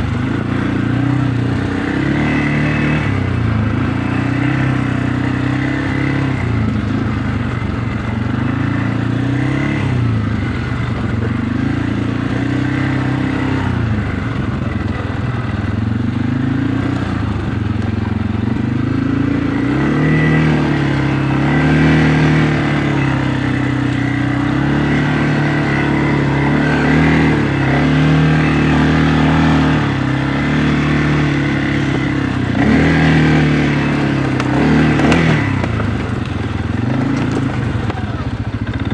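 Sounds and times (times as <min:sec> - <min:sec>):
engine revving up and down: 0:00.0 - 0:07.7, 0:16.2 - 0:38.9.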